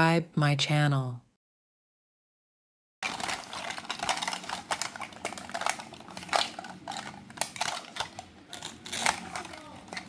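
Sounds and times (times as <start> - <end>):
fruit crunching and scraping: 3.0 - 10.0.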